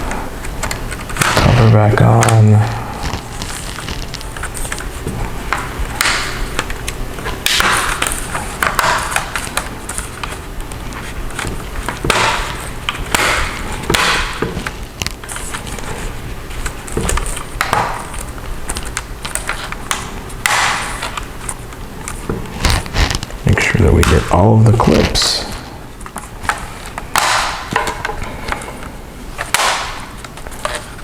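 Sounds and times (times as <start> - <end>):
plastic panel scraping: 0.7 - 12.7.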